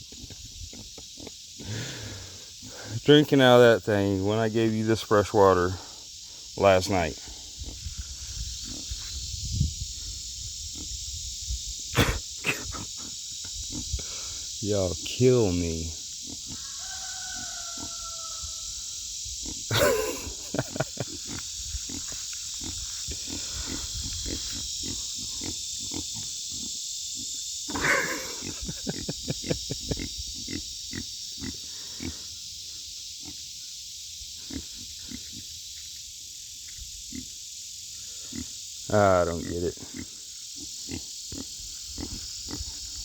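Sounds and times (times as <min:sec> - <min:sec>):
insects droning: 0:00.0 - 0:43.0
pig grunting: 0:19.4 - 0:22.0, 0:22.6 - 0:26.7, 0:27.7 - 0:32.2, 0:38.2 - 0:42.7.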